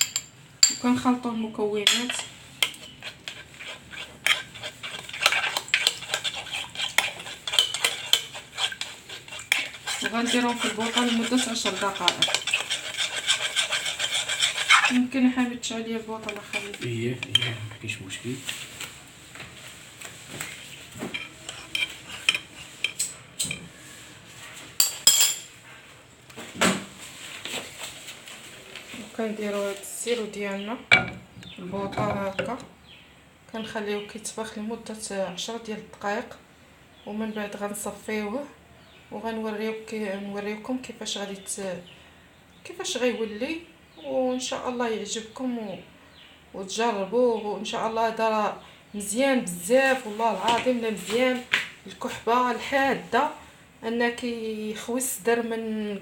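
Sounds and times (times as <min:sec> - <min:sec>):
spoon clinking against container: 0:00.0 - 0:00.9, 0:04.3 - 0:14.6, 0:24.8 - 0:25.5
utensils and pot clanking: 0:00.0 - 0:01.0, 0:01.8 - 0:15.1, 0:16.2 - 0:17.8, 0:21.0 - 0:23.7, 0:24.8 - 0:25.5, 0:30.9 - 0:32.6.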